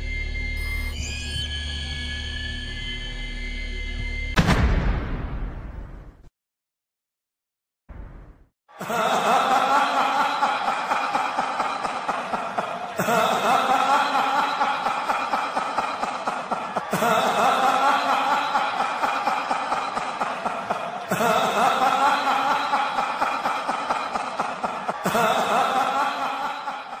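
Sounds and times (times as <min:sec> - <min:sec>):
human laughter: 0:08.7 - 0:27.0.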